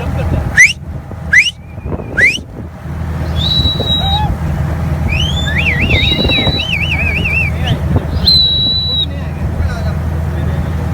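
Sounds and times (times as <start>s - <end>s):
dolphins whistling: 0.5s - 2.5s, 3.2s - 4.4s, 5.0s - 9.2s.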